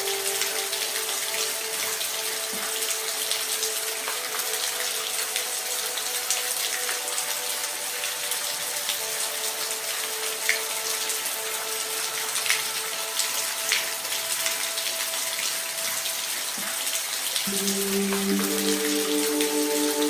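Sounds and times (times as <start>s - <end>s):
steady rain falling: 0.0s - 20.0s
rain drop ticks: 8.0s - 11.5s, 16.0s - 20.0s.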